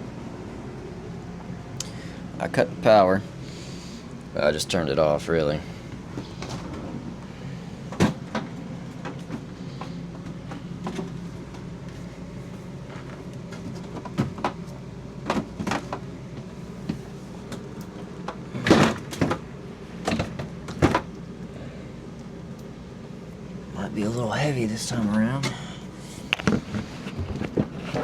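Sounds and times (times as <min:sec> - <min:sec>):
steady low hum: 0:00.0 - 0:28.0
refrigerator doors knocking and clunking: 0:07.9 - 0:09.4, 0:13.5 - 0:16.0, 0:18.2 - 0:21.1.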